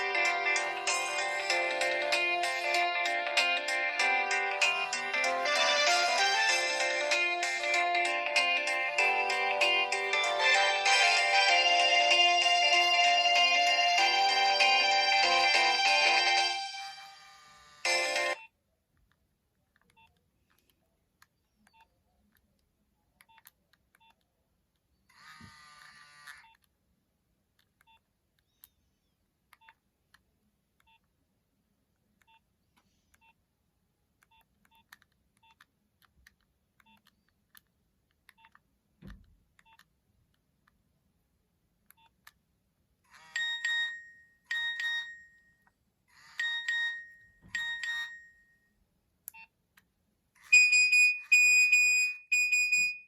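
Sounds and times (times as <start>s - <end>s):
phone key beeps: 43.2s - 45.4s, 46.3s - 48.4s, 50.4s - 53.0s
electronic ringtone pulsed beeps: 43.3s - 45.5s, 46.3s - 48.6s, 50.5s - 53.0s.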